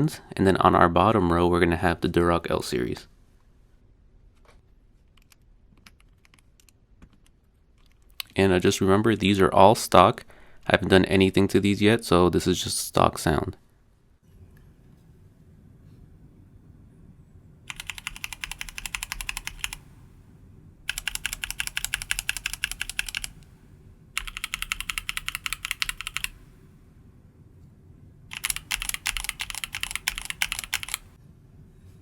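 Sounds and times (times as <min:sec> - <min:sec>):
mechanical keyboard typing: 0:05.2 - 0:06.8, 0:17.7 - 0:19.8, 0:20.9 - 0:23.4, 0:24.2 - 0:26.4, 0:28.3 - 0:31.1.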